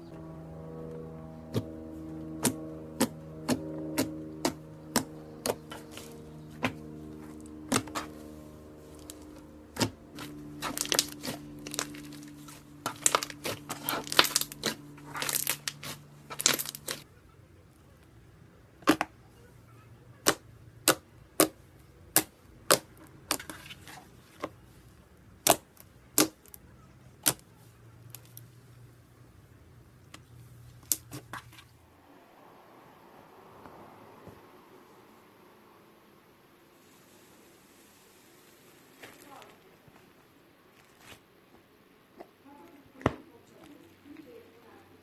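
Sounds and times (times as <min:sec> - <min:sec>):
slime popping and crackling: 0:09.8 - 0:17.0, 0:25.4 - 0:26.6.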